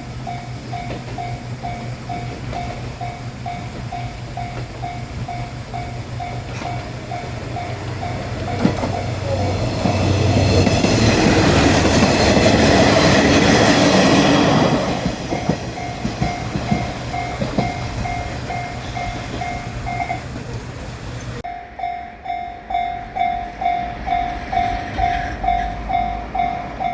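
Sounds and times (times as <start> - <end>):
wheel clatter: 0.0 - 21.4
diesel train engine drone: 0.0 - 26.9
railroad crossing bell ringing: 0.0 - 26.9.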